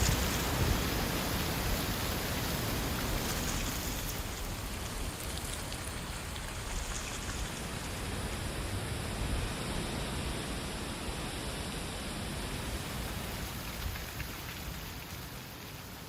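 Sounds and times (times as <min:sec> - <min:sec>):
wind buffeting microphone: 0:00.0 - 0:05.2.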